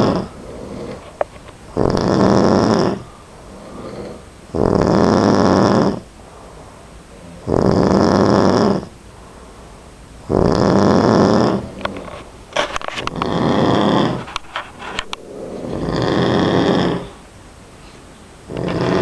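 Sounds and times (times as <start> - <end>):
person snoring: 0.0 - 1.0, 1.7 - 9.0, 10.2 - 12.2, 13.0 - 17.2, 18.5 - 19.0
quiet breathing: 0.0 - 19.0.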